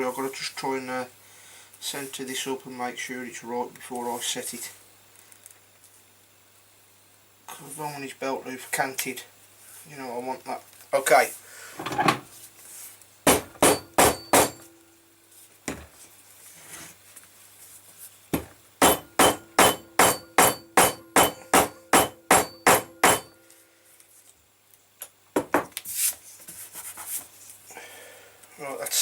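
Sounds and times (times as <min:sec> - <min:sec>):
hammer striking with metallic ring: 0:13.3 - 0:14.8, 0:18.8 - 0:23.4.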